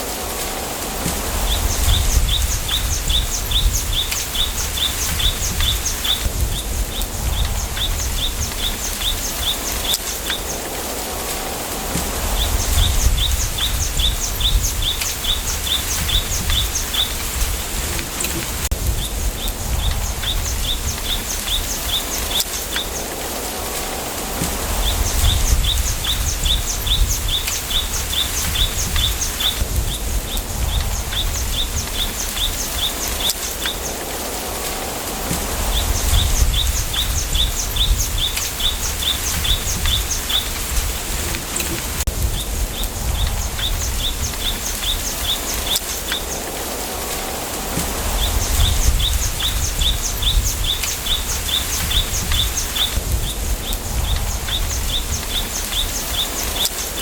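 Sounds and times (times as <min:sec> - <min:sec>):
wind rumbling on microphone: 0:00.0 - 0:57.0
wind rustling bamboo: 0:00.0 - 0:57.0
bird chirping: 0:35.4 - 0:40.8.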